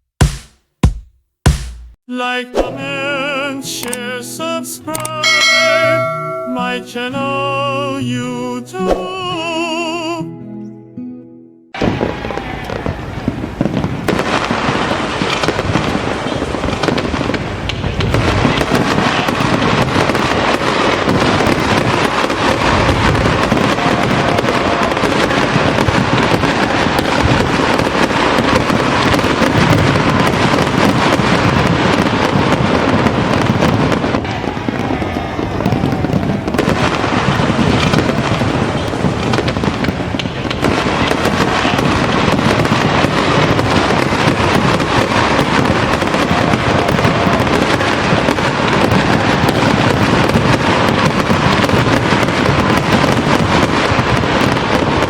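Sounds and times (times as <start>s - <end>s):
fireworks bangs and crackling: 5.0s - 7.2s, 11.8s - 55.0s.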